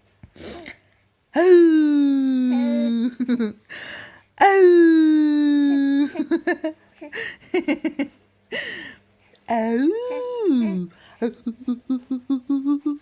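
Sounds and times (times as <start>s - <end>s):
baby cooing: 2.3s - 3.1s, 9.8s - 10.9s.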